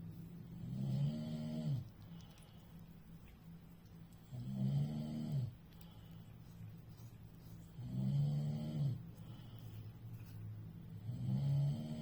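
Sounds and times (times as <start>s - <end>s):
quiet breath: 0.0s - 12.0s
person snoring: 4.3s - 5.5s, 7.8s - 9.0s, 11.0s - 12.0s.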